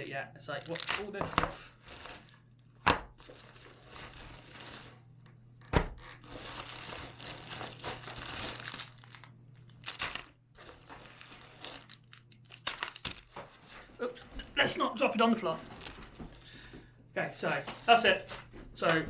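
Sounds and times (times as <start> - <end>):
packaging crinkling: 6.0 - 13.9.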